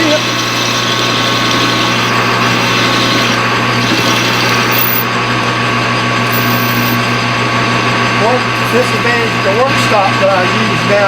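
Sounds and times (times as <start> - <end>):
boring bar cutting metal: 0.0 - 5.2, 6.2 - 7.2
machine tool motor hum: 0.0 - 7.3.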